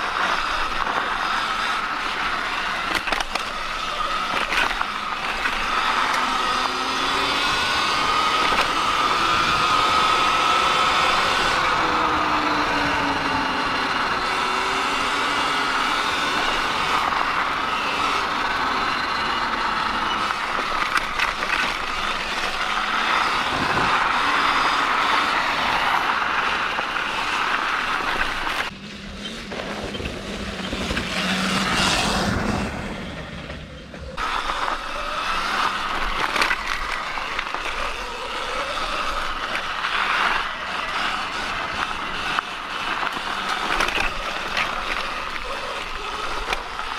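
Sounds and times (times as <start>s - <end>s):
chain and tyre noise: 0.0s - 46.9s
electric motor whine: 0.0s - 46.9s
wind over microphone: 22.3s - 26.7s.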